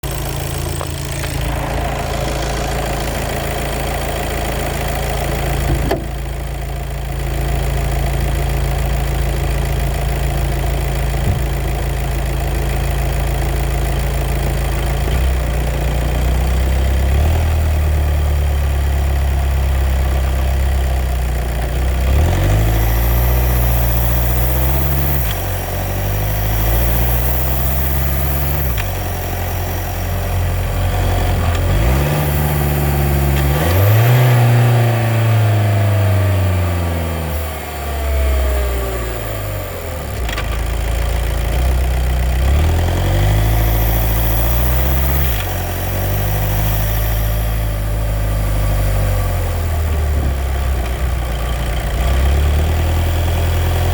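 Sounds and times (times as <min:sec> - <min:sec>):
clutch noise: 0:00.0 - 0:06.7, 0:22.2 - 0:36.7, 0:37.3 - 0:52.3
car engine running: 0:00.0 - 0:53.9.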